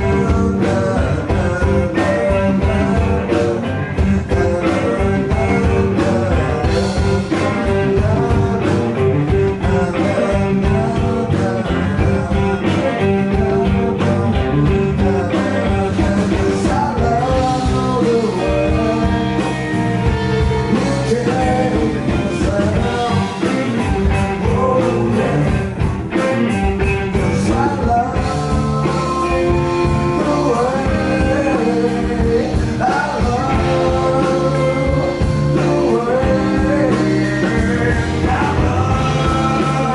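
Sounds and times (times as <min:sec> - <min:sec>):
blues-rock band playing: 0:00.0 - 0:39.9
man singing: 0:00.0 - 0:39.9.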